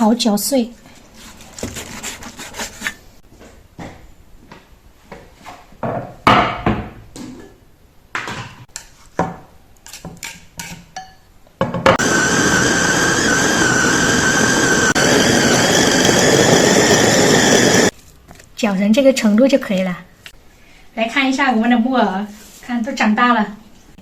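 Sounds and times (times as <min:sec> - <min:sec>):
electric food chopper whining: 0:11.9 - 0:17.9.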